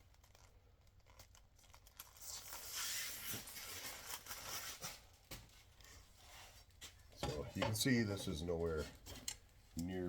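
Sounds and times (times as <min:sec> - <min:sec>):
plastic film being peeled off: 0:00.0 - 0:06.0.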